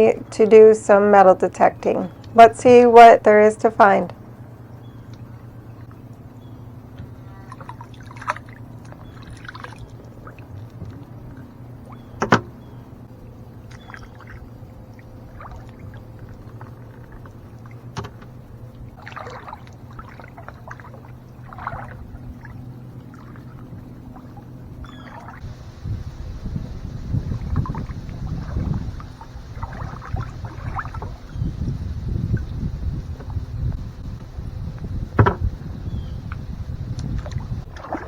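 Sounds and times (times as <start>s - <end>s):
steady low hum: 0.0s - 38.0s
sharp knocks: 35.2s - 35.5s.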